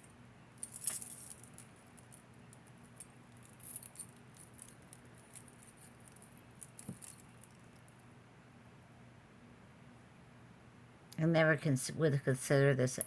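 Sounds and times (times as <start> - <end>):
metal ball chain clicking: 0.6 - 7.9.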